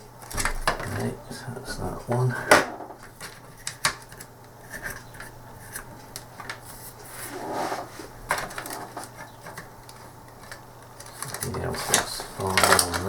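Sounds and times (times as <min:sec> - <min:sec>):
plastic parts clicking and knocking: 0:00.0 - 0:01.1, 0:02.0 - 0:06.6, 0:08.3 - 0:13.0
plastic rubbing: 0:00.0 - 0:13.0
plastic scrape: 0:03.2 - 0:13.0.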